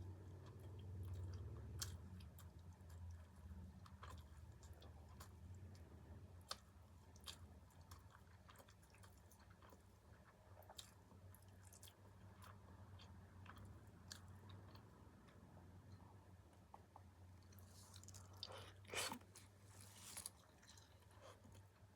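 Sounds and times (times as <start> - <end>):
faint chewing of food: 0.0 - 21.9.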